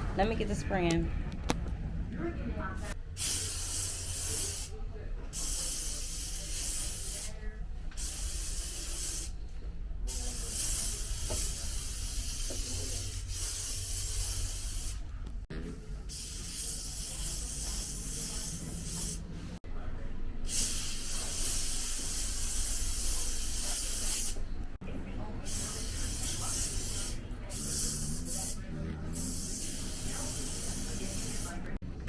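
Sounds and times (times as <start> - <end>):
aerosol spray can hissing: 3.2 - 4.7, 5.4 - 7.3, 8.0 - 9.3, 10.1 - 15.0, 16.1 - 19.2, 20.5 - 24.4, 25.5 - 31.6.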